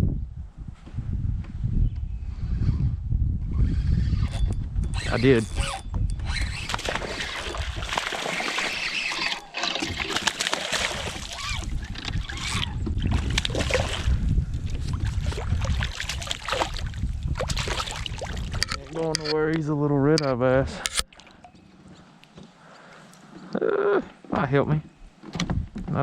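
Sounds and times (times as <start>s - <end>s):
water splashing and dripping: 6.6s - 18.9s, 21.0s - 22.4s.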